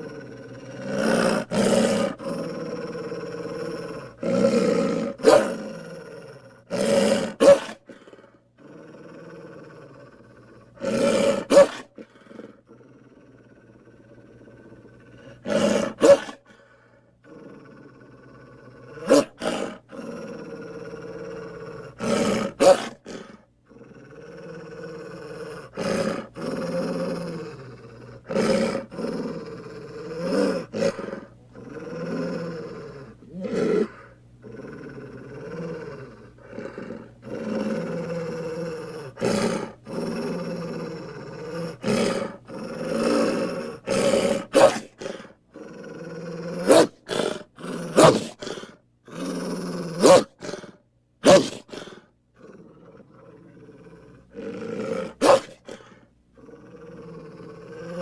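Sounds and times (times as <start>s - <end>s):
creature growls and roars: 0.0s - 58.0s
sharp loud bark: 7.4s - 7.8s, 11.5s - 11.9s, 44.5s - 44.9s, 48.0s - 48.4s, 51.2s - 51.7s.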